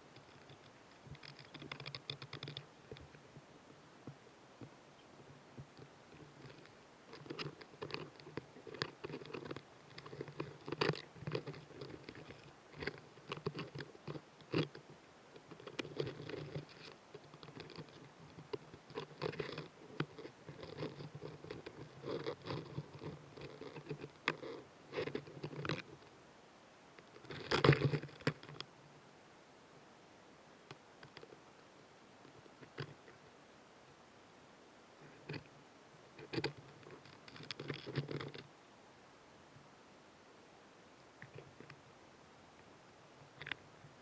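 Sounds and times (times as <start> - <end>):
insect chewing with crunching: 0.2 - 3.2, 5.6 - 26.1, 27.0 - 28.7.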